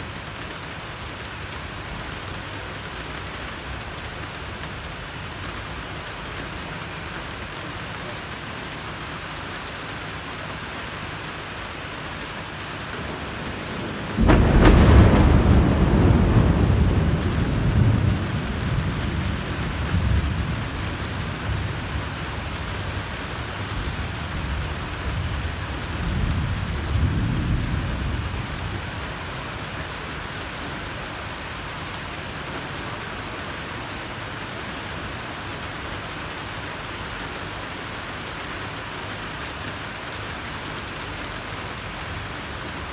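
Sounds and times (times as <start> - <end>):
heavy rain: 0.0 - 42.9
thunder crack and rumble: 12.9 - 29.4.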